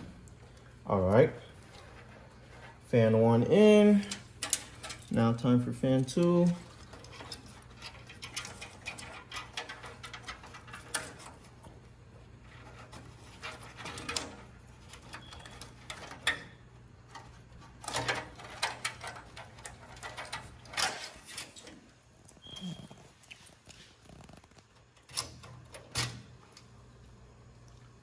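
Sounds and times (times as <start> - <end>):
faint steady hum: 0.0 - 28.0
hands rustling cable and parts: 17.1 - 21.9.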